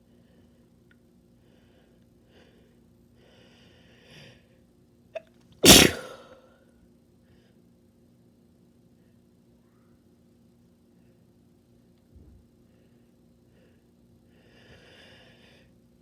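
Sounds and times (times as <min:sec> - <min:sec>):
person sneezing: 0:05.6 - 0:06.4
breathy inhale: 0:13.5 - 0:15.7.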